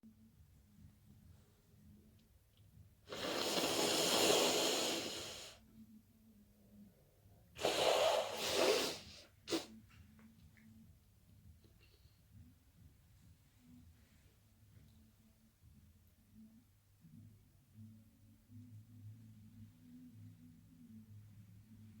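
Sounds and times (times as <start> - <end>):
person blowing nose: 3.1 - 5.6, 7.6 - 9.8.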